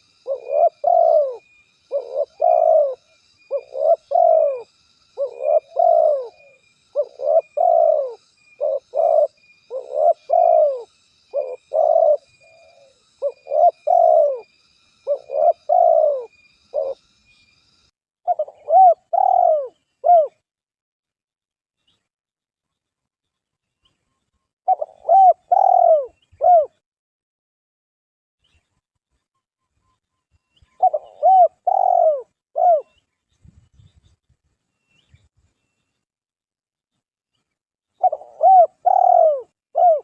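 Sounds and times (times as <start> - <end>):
dove cooing: 0.0 - 17.0, 18.3 - 20.4, 24.7 - 26.8, 30.7 - 33.0, 38.0 - 40.0
faint high chirping: 0.0 - 20.4, 28.4 - 36.0, 37.3 - 40.0.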